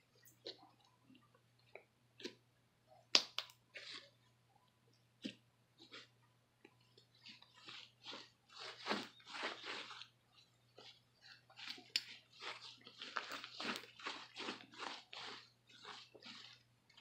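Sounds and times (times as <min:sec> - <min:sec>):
slime crackling and squishing: 0:06.8 - 0:17.0.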